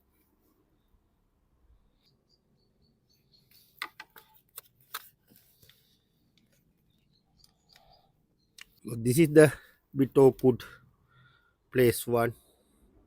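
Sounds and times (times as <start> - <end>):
plastic clicks and snaps: 8.6 - 8.8.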